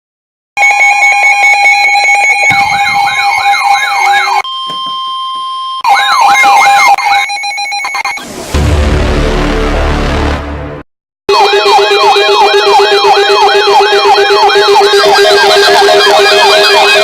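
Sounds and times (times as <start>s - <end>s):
electronic siren sweeping: 0.6s - 8.7s, 11.3s - 17.0s
steady electronic beeping: 1.1s - 6.0s.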